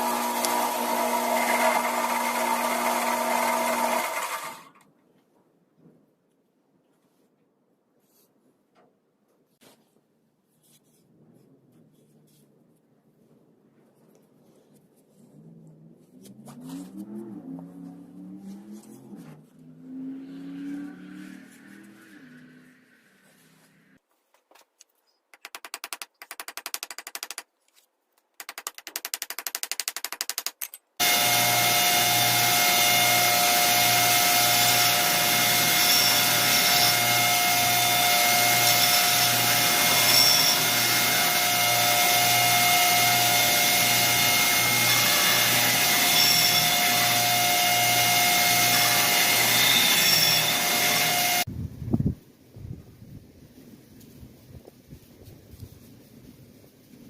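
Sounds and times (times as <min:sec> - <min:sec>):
rapid clicking: 0:25.3 - 0:27.5, 0:28.4 - 0:30.7
power tool running with hiss: 0:31.0 - 0:51.5.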